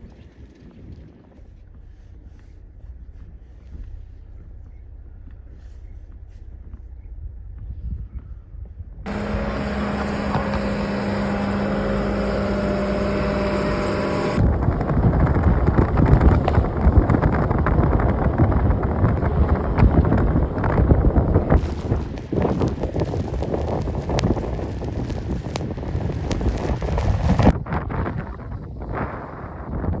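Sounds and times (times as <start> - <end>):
steady mechanical hum: 1.5 - 27.6
gusty wind buffeting microphone: 7.1 - 30.0
wind roar: 9.0 - 30.0.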